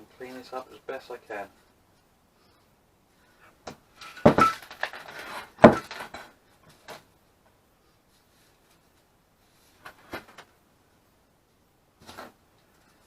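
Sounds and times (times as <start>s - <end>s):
workshop knocks and clinks: 4.0s - 4.7s, 5.6s - 6.2s.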